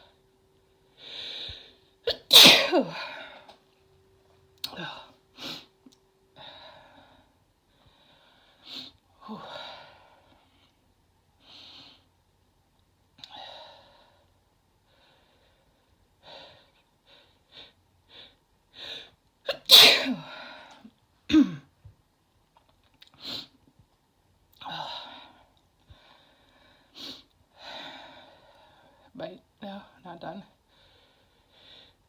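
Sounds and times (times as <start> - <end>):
woman breathing heavily: 0.9 - 2.0, 6.3 - 10.8, 13.3 - 19.2, 24.6 - 29.2, 30.6 - 32.0
woman sneezing: 2.1 - 3.3, 19.5 - 20.4.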